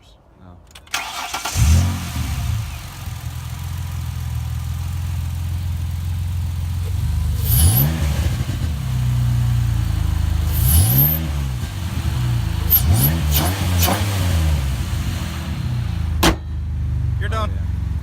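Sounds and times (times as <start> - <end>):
car engine idling and revving: 1.1 - 18.0.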